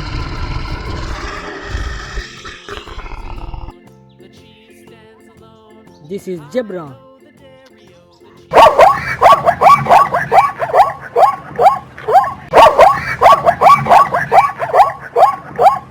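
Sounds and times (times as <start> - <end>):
zebra yelping barks: 8.5 - 15.9.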